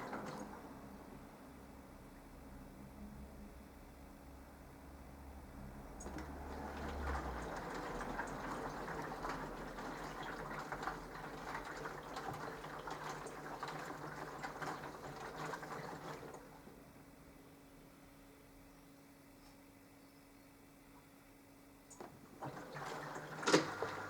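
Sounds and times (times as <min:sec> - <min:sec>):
washing machine sloshing laundry: 0:00.0 - 0:01.3, 0:05.8 - 0:17.4, 0:21.9 - 0:24.0.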